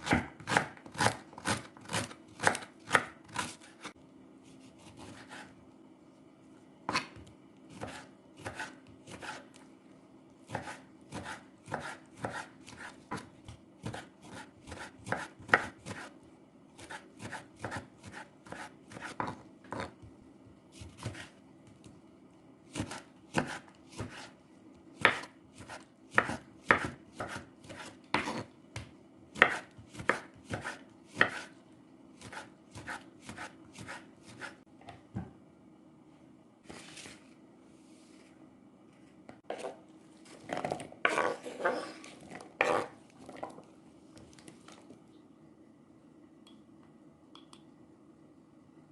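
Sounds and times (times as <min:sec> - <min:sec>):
knife chopping on cutting board: 0:00.0 - 0:03.9, 0:04.8 - 0:05.5, 0:06.9 - 0:09.6, 0:10.5 - 0:16.1, 0:16.8 - 0:20.0, 0:20.8 - 0:21.4, 0:22.7 - 0:24.4, 0:25.0 - 0:31.5, 0:32.2 - 0:34.6.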